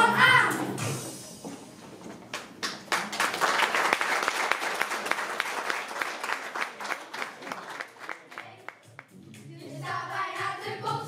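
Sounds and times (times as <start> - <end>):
audience applauding: 2.3 - 9.1.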